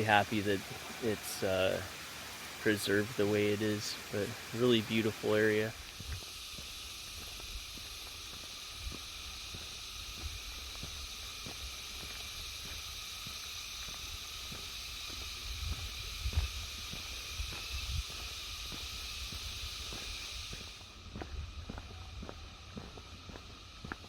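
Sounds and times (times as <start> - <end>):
insects hissing: 0.0 - 24.0
footsteps on road: 5.8 - 24.0
wind rumble on microphone: 15.1 - 22.5.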